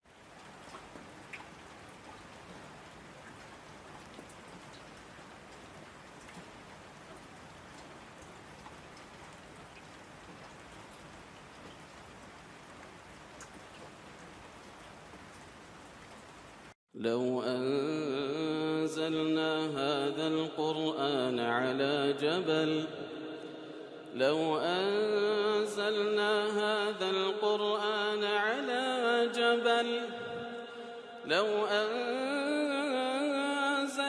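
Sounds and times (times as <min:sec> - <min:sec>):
steady rain hiss: 0:00.1 - 0:16.8
ticks of raindrops: 0:00.1 - 0:16.8.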